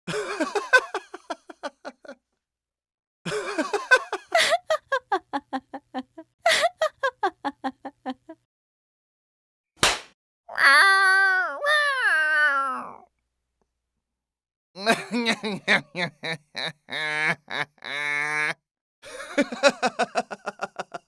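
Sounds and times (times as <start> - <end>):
cat meowing: 10.5 - 13.0.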